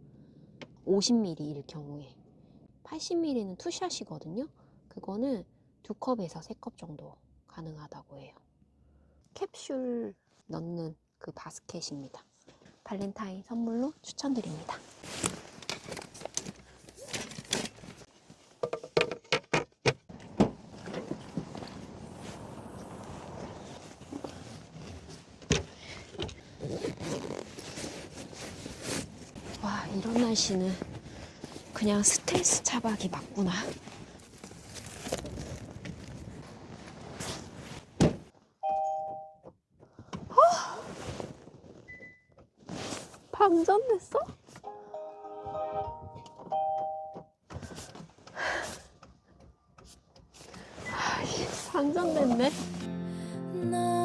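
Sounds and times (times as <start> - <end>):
two-note electronic chime: 44.7 - 47.2.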